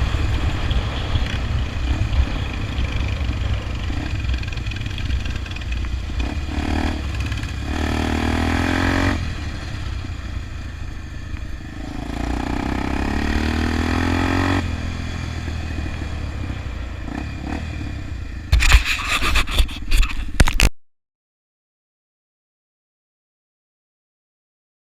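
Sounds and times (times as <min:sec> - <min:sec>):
motorcycle engine revving: 0:00.0 - 0:18.9.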